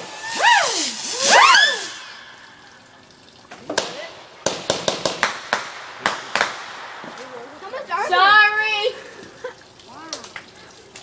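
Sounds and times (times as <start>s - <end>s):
firecrackers cracking: 0.0s - 2.4s, 3.6s - 7.5s
firework whistle: 0.0s - 2.7s.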